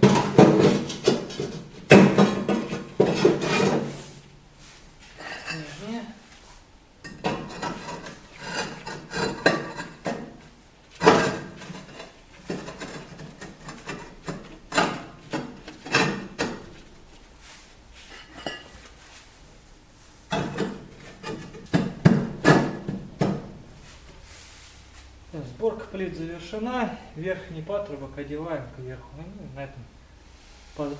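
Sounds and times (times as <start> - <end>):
boards knocking and scraping: 0.0 - 4.1, 7.1 - 17.1, 20.3 - 23.8.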